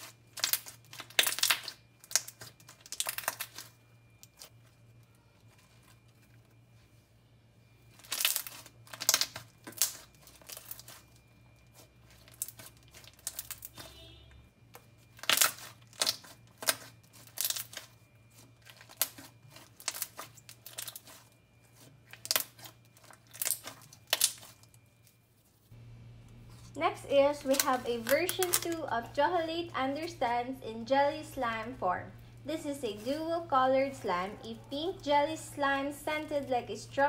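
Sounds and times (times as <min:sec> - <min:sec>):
slime clicking and popping: 0:00.0 - 0:03.7, 0:08.0 - 0:11.0, 0:15.2 - 0:17.9, 0:22.1 - 0:24.6.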